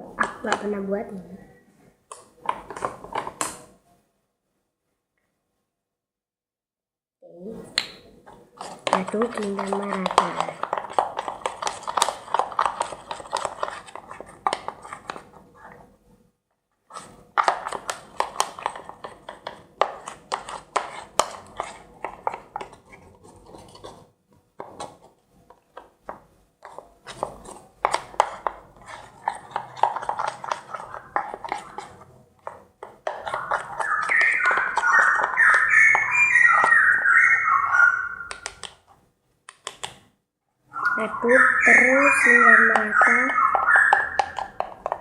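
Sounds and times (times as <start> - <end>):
sticky slime squelching: 7.6 - 15.9, 16.9 - 26.0, 26.6 - 40.0.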